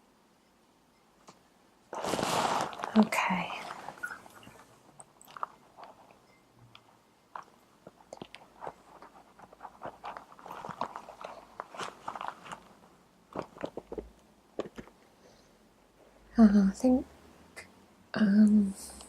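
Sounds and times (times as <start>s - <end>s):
microphone rubbing on fabric: 2.0s - 3.0s.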